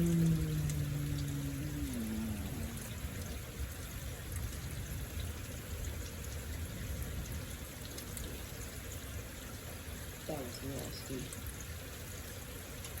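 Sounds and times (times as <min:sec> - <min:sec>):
low thunder rumble: 0:00.0 - 0:07.5
heavy rain pouring: 0:00.0 - 0:13.0.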